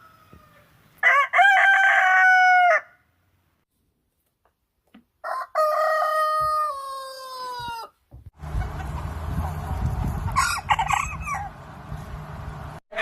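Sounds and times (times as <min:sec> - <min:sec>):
rooster crowing: 0:00.0 - 0:03.0, 0:05.2 - 0:08.0
chicken clucking: 0:08.4 - 0:11.4
low rumbling noise: 0:08.4 - 0:12.8.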